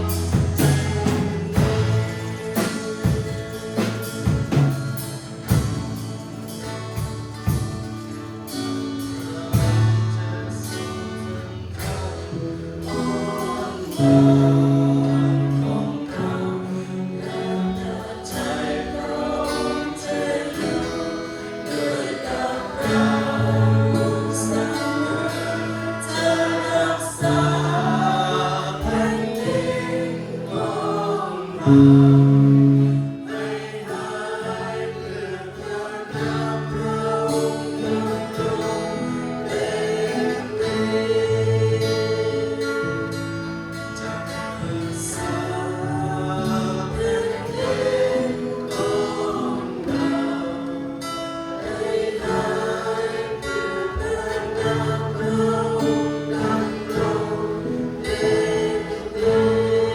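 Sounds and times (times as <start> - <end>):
drum hits: 0.0 - 6.1
worship team singing with band: 0.0 - 59.9.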